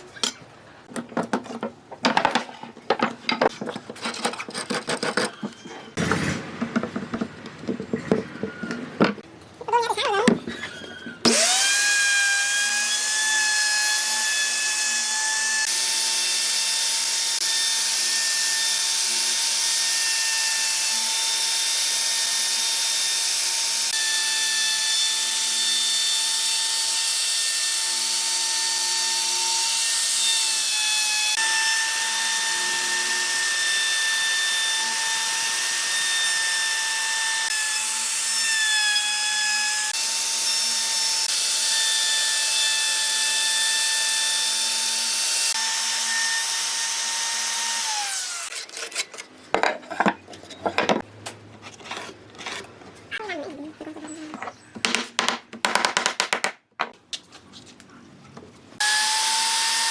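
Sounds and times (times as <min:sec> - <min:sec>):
electric power tool whining: 0:10.6 - 0:48.6.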